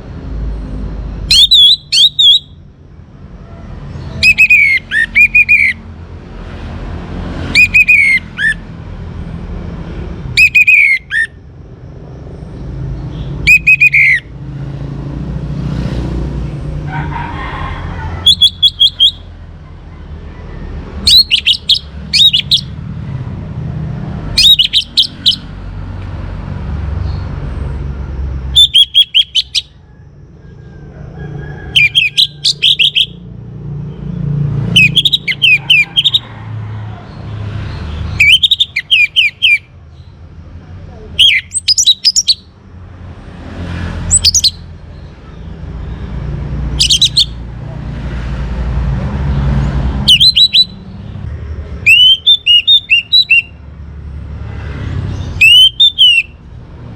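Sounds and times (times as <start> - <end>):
thrush whistled song: 1.3 - 2.6, 4.1 - 5.8, 7.4 - 8.6, 10.4 - 11.4, 13.2 - 14.3, 18.2 - 19.3, 21.0 - 22.7, 24.4 - 25.5, 28.6 - 29.9, 31.6 - 33.2, 34.7 - 36.3, 37.8 - 40.1, 41.2 - 42.5, 44.1 - 44.7, 46.8 - 47.4, 50.0 - 50.9, 51.8 - 53.6, 55.2 - 56.5.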